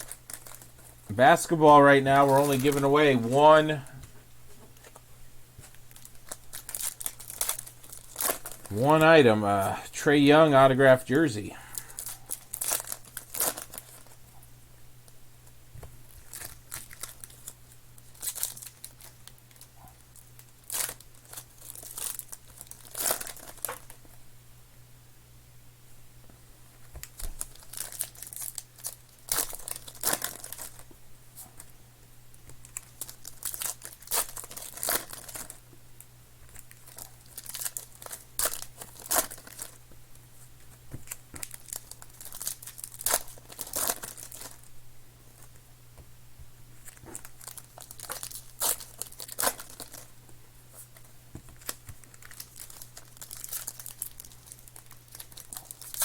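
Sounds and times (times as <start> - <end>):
plastic wrapping tearing and crinkling: 0.0 - 3.7, 5.6 - 9.8, 11.8 - 14.2, 16.1 - 24.2, 27.0 - 30.9, 32.4 - 35.6, 36.5 - 39.8, 41.0 - 44.7, 46.8 - 50.1, 50.7 - 56.0
low steady hum: 0.0 - 56.0.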